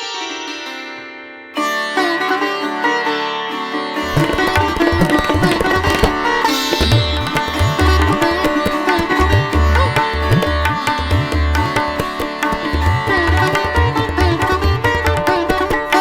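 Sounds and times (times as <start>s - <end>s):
sitar plucked strings: 0.0s - 16.0s
tabla drum strokes: 4.0s - 16.0s.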